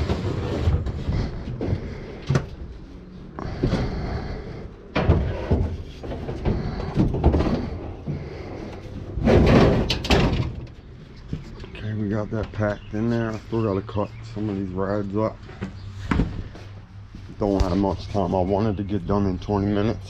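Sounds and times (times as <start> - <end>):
scrap metal clanking: 4.9 - 11.6.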